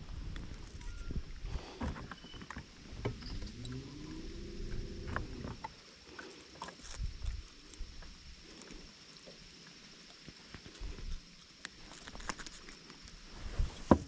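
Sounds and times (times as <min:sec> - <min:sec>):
small motor hum: 0:03.0 - 0:05.7.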